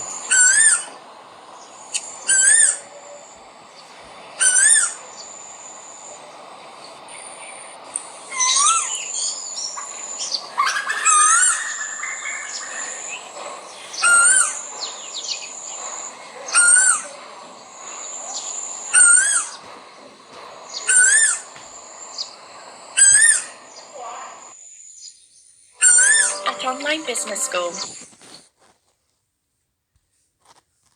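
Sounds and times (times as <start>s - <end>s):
faint bird chirps and whistles: 0.0s - 19.8s, 20.6s - 28.0s
koel calling: 0.0s - 19.8s, 25.8s - 28.0s.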